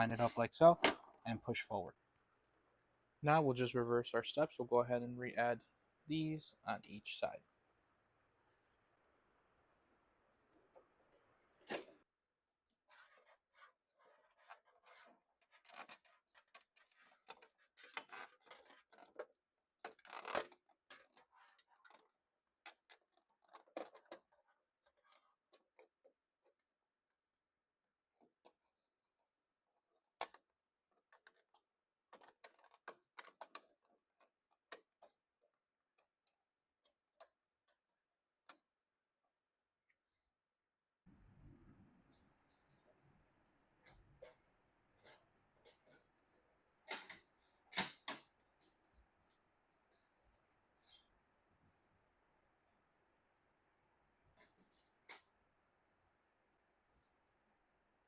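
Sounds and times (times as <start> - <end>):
faint clicks and rubbing of parts: 12.7 - 51.8, 54.0 - 57.4.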